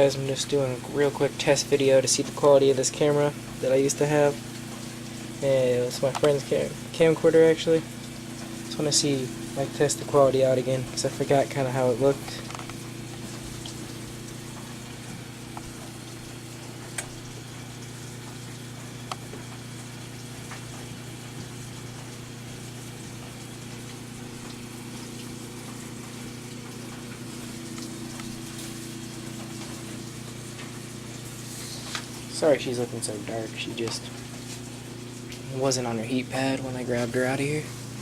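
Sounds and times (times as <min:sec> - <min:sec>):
low electrical hum: 0:00.0 - 0:38.0.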